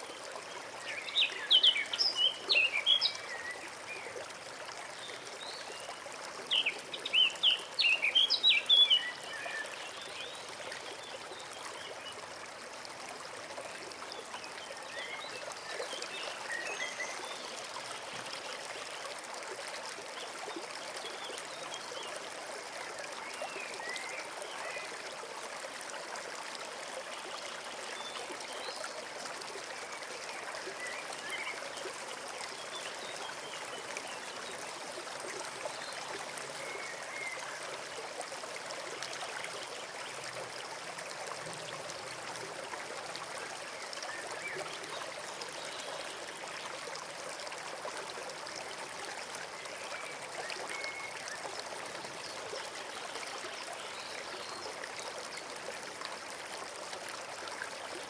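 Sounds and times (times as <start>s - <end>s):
stream trickling: 0.0s - 58.0s.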